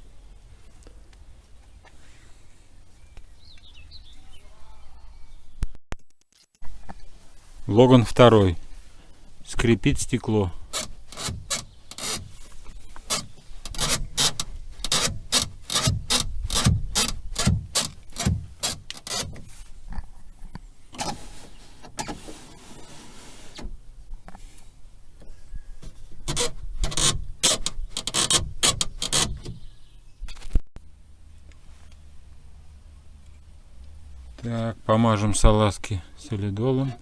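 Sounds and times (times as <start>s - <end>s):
power window glass squeaking: 10.6s - 19.5s, 21.0s - 23.8s, 26.2s - 29.7s.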